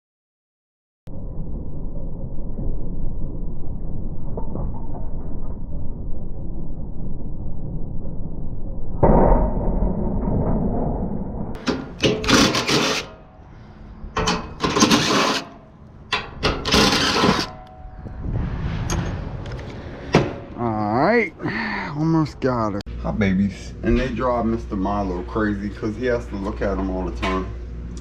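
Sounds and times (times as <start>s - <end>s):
steady low rumble: 1.1s - 12.0s, 17.5s - 28.0s
loud clattering bursts: 16.4s - 17.6s.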